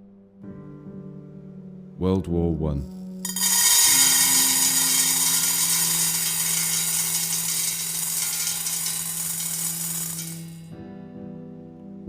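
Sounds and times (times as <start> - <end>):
ball bearings pouring into metal tray: 3.3 - 10.7.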